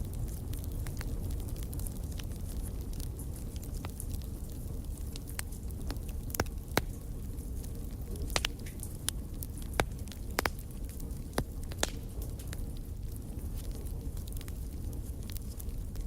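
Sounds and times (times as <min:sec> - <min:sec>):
campfire crackling and popping: 0:00.0 - 0:16.0
low rumble of burning fire: 0:00.0 - 0:16.0.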